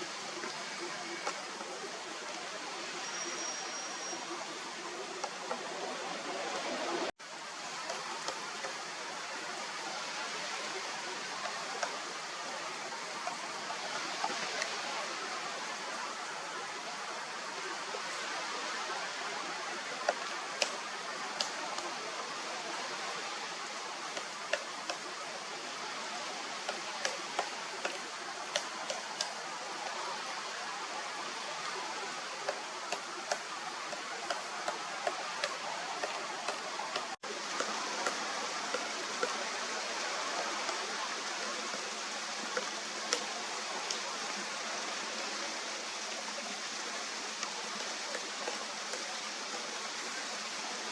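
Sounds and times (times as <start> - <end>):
woodpecker pecking at wood: 26.7 - 29.4, 32.5 - 39.4.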